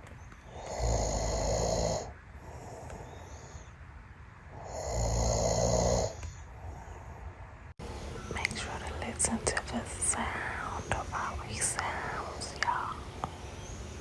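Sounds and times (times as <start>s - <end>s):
quiet breathing: 0.3s - 7.8s, 8.6s - 13.5s
man snoring: 0.5s - 3.0s, 4.5s - 6.2s.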